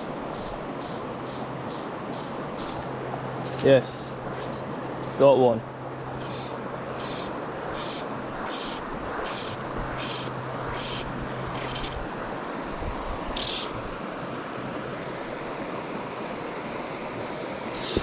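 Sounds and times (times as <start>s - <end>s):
river water rushing: 0.0s - 18.0s
fly line hissing swishes: 7.1s - 12.0s.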